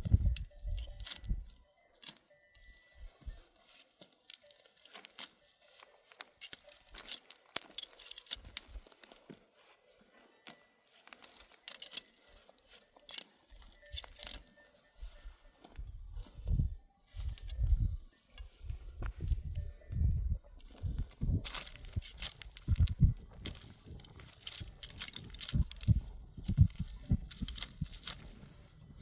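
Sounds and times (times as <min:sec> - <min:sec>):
wind rumbling on microphone: 0:00.0 - 0:01.6, 0:15.8 - 0:29.0
dry grass tearing and crunching: 0:00.0 - 0:02.8, 0:03.9 - 0:16.5, 0:17.1 - 0:17.9, 0:20.5 - 0:29.0.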